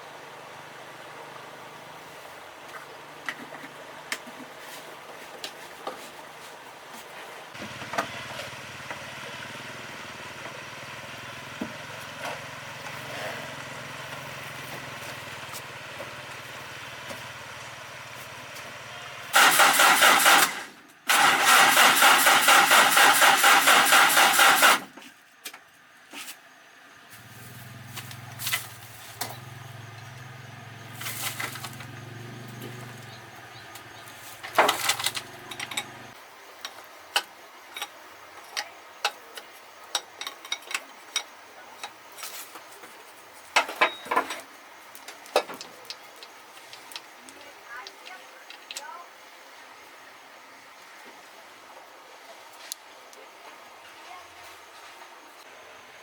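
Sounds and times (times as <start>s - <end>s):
truck engine cranking and starting: 7.6s - 25.0s, 27.2s - 36.2s.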